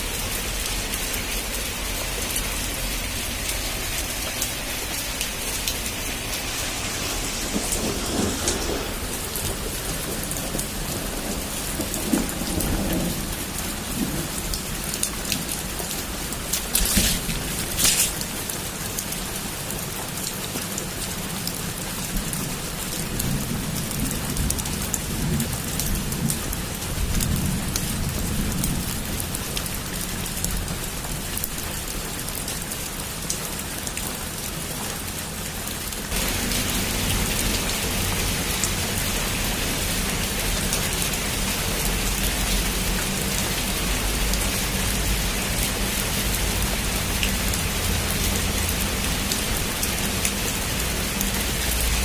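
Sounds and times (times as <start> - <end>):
heavy rain on a roof: 0.0 - 52.0
thunder rumbling: 2.6 - 18.5.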